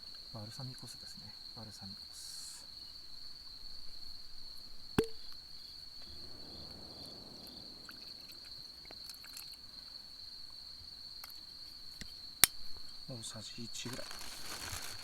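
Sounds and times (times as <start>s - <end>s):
crickets trilling: 0.0s - 15.0s
liquid being poured: 5.0s - 5.2s.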